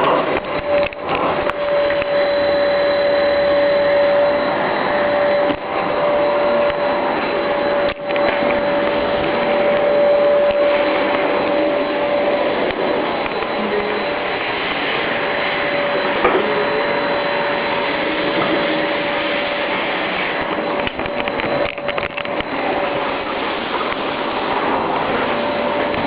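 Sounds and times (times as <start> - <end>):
vacuum cleaner running: 0.0 - 26.0.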